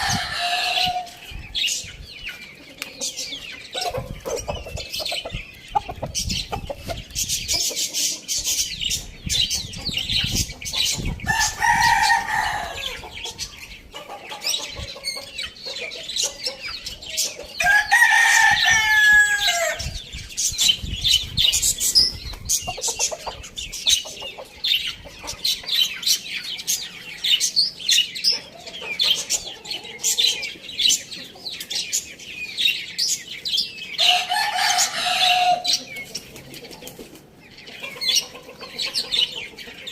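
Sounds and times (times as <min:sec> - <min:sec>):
rooster crowing: 0:00.0 - 0:01.2, 0:11.3 - 0:13.0, 0:17.6 - 0:19.8, 0:34.0 - 0:35.8
birds chirping: 0:00.0 - 0:39.9.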